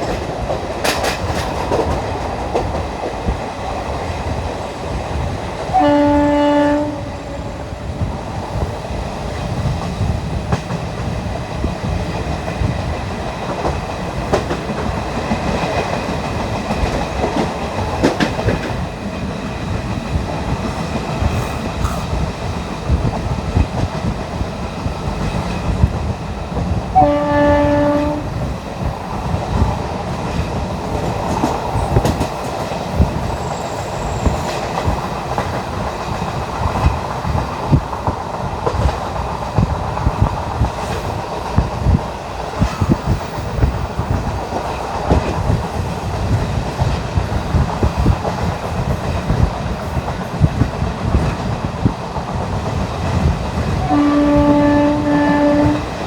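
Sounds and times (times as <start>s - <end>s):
train wheels clickety-clack: 0.0s - 56.0s
locomotive horn blasts: 5.8s - 7.4s, 27.0s - 28.3s, 53.8s - 55.9s.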